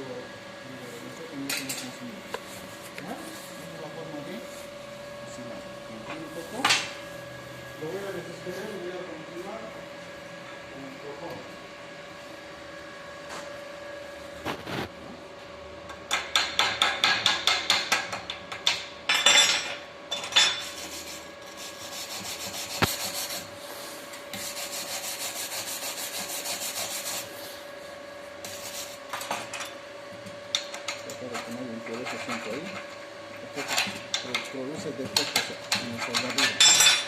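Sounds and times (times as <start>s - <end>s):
wire brush scrubbing metal: 20.6s - 27.6s, 31.1s - 34.0s.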